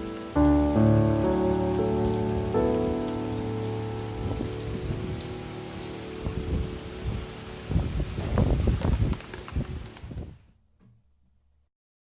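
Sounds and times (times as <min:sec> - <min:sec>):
wind buffeting microphone: 0:01.7 - 0:10.5.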